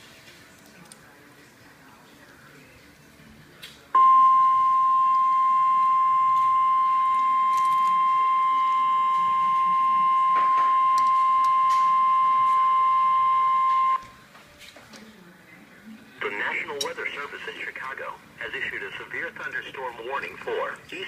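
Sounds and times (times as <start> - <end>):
high-pitched alarm tone: 4.0 - 14.0.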